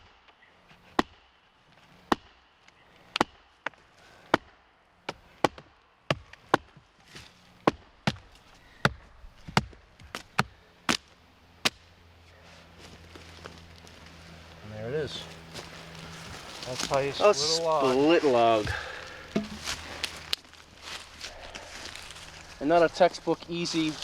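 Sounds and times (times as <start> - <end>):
axe striking wooden wedges: 18.6 - 20.2.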